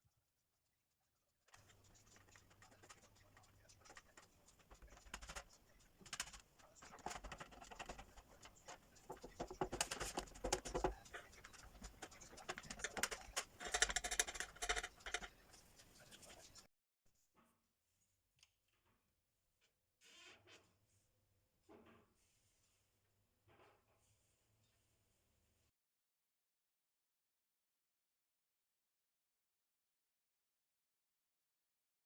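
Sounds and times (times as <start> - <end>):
utensils scraping in a bowl: 1.6 - 16.6.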